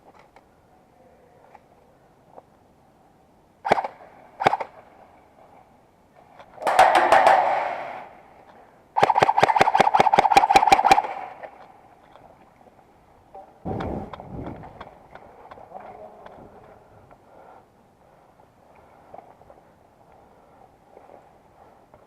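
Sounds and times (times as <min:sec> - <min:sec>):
airsoft guns firing: 0:03.6 - 0:04.7, 0:06.6 - 0:08.2, 0:09.0 - 0:11.6.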